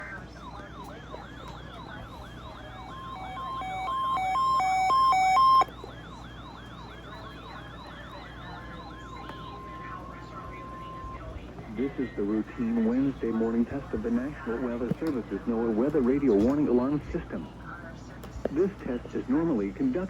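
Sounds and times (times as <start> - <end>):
siren-like rising sweep alarm: 0.0 - 11.2
alarm alternating two beeping tones: 1.4 - 5.7, 7.3 - 9.8
steady high alert tone: 2.4 - 5.7.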